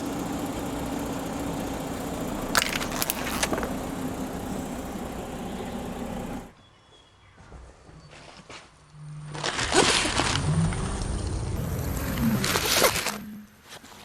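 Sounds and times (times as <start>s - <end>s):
car engine running: 0.0s - 6.5s.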